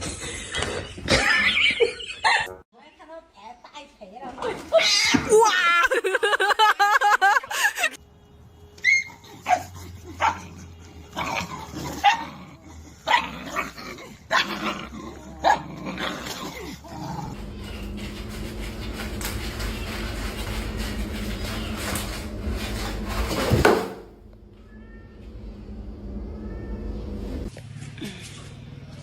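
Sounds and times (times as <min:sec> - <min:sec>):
dog whining: 0:08.8 - 0:13.7
dog barking and yipping: 0:08.8 - 0:14.6
steady low hum: 0:16.5 - 0:29.0.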